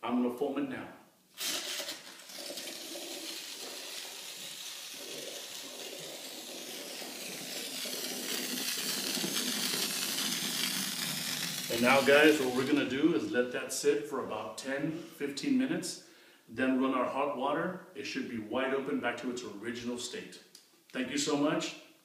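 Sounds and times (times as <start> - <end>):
foam spraying with hissing rush: 1.4 - 12.8.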